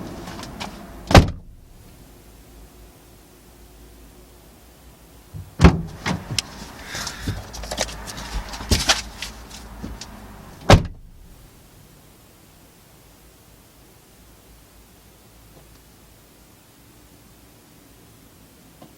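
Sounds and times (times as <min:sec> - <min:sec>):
car door shutting: 0:00.3 - 0:01.8, 0:05.4 - 0:07.5, 0:10.6 - 0:11.4
clicks and rustling: 0:05.9 - 0:10.2.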